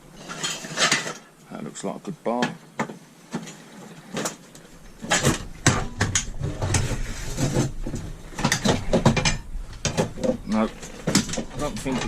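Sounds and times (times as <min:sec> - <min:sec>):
metal knocks and rattles: 0:04.2 - 0:12.0.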